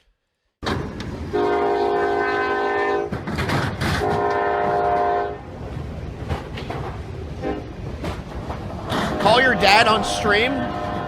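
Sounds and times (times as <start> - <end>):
low rumble of moving train: 0.6 - 11.0
locomotive air horn blasts: 1.3 - 3.1, 4.0 - 5.4, 8.9 - 11.0.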